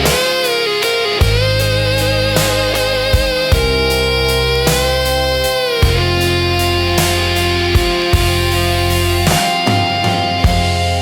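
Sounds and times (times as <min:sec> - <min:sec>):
bass line: 0:00.0 - 0:00.4, 0:01.2 - 0:11.0
electric guitar lead: 0:00.0 - 0:11.0
drum hit: 0:02.4 - 0:04.0, 0:05.8 - 0:06.2, 0:09.3 - 0:11.0.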